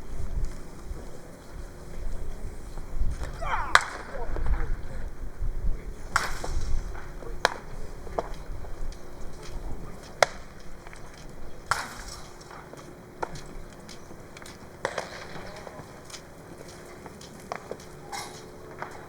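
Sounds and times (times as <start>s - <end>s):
baseball impacts: 3.2s - 4.8s.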